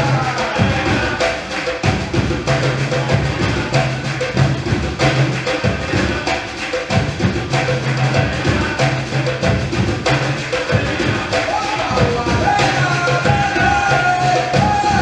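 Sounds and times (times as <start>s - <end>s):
sharp drum strokes: 0.0s - 15.0s.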